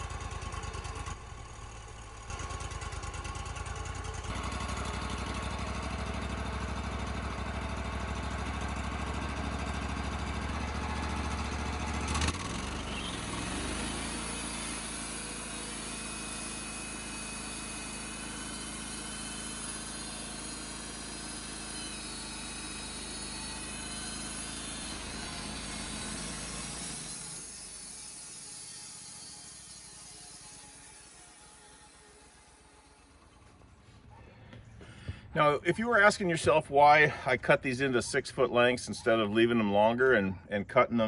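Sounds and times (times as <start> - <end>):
engine running: 0.0 - 40.6.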